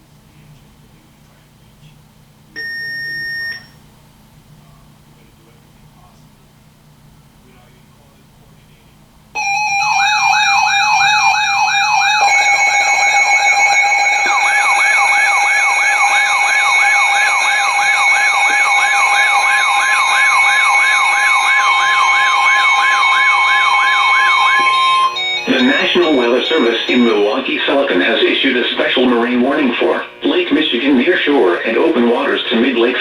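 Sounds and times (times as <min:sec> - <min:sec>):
steady alarm tones: 0:02.6 - 0:03.8, 0:09.4 - 0:33.0
siren wailing up and down: 0:09.4 - 0:28.2.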